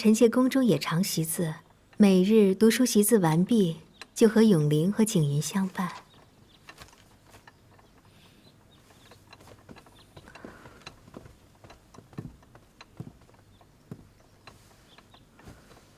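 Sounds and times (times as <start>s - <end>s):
soft clicks and taps: 5.7s - 15.9s.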